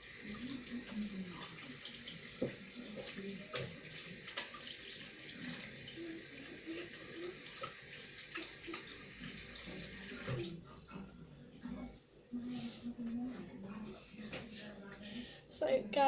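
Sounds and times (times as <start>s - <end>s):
tap water running into sink: 0.0s - 10.5s.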